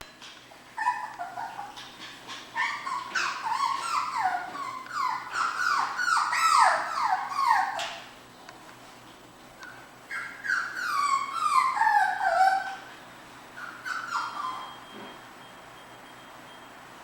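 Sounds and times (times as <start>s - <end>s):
puppies crying: 0.7s - 8.1s, 9.7s - 14.8s.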